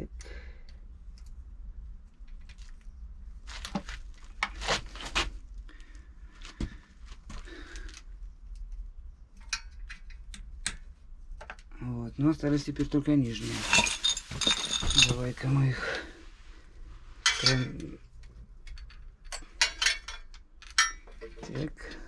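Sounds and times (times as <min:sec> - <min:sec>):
low steady hum: 0:00.0 - 0:22.0
metal tools knocking on bolts: 0:17.2 - 0:17.9, 0:18.7 - 0:21.6.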